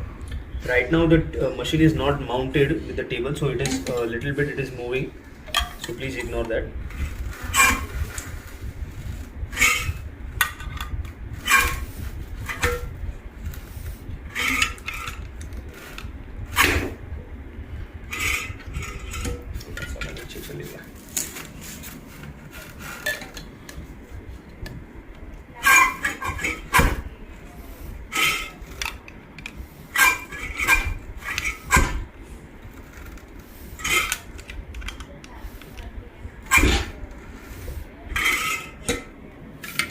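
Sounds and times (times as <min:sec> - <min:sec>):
metal crimping machine clanking: 0:14.3 - 0:17.0, 0:33.8 - 0:35.0.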